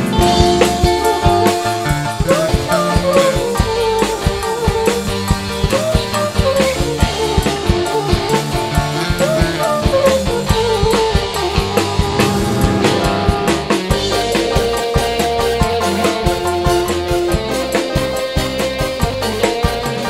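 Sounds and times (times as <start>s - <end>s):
sliding melodic lead line: 0.0s - 18.6s
bass: 0.0s - 20.0s
drum kit beat: 0.0s - 20.0s.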